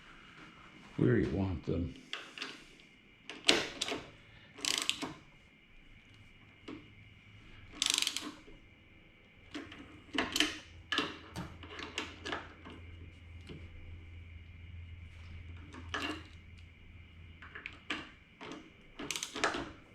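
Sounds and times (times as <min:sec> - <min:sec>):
ratchet wrench clicking: 0:04.6 - 0:05.2, 0:07.8 - 0:08.4, 0:19.0 - 0:19.5.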